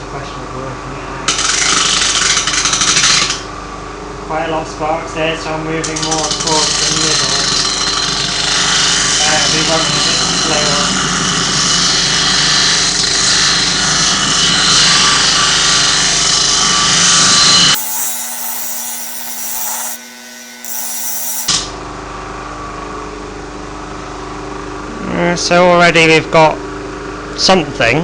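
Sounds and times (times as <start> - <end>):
disc sander grinding steel: 17.7 - 21.6
sander motor humming: 17.8 - 21.6.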